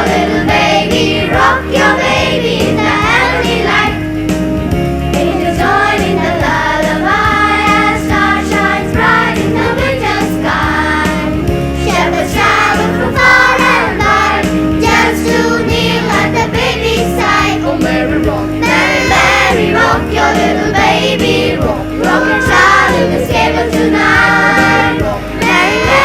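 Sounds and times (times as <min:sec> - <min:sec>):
choir singing in parts: 0:00.0 - 0:04.1, 0:05.1 - 0:26.0
instrumental accompaniment: 0:00.0 - 0:26.0.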